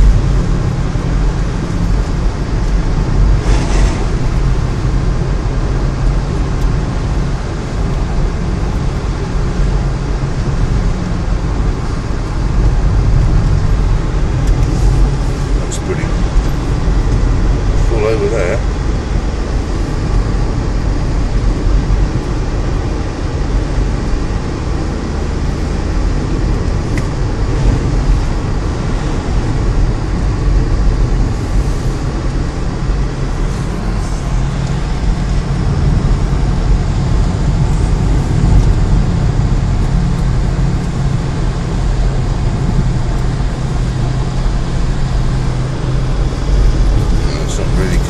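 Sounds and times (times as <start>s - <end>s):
car engine drone: 0.0s - 48.0s.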